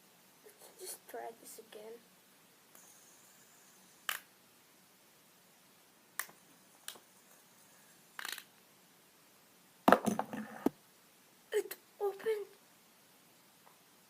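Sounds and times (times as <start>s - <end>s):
plastic fidget spinner cracking: 4.0s - 4.3s, 8.2s - 8.5s.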